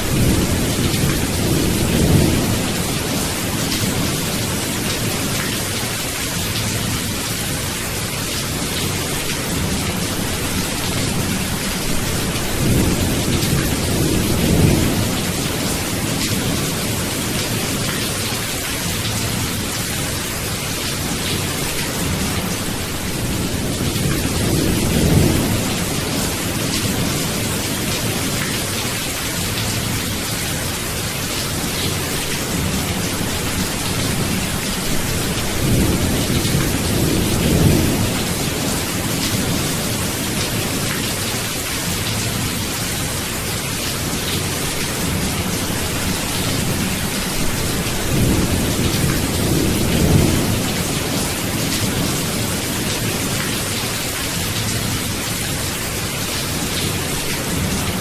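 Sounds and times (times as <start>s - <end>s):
low rolling thunder: 0.0s - 4.9s, 9.5s - 17.8s, 22.0s - 28.5s, 31.9s - 40.8s, 45.0s - 53.3s
steady rain: 0.0s - 58.0s.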